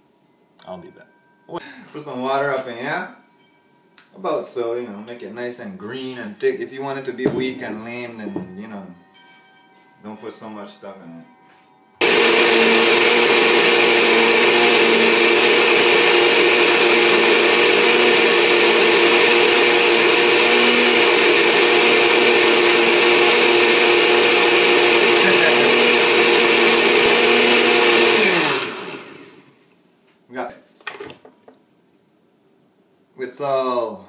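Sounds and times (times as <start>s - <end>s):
blender running: 12.0s - 29.6s.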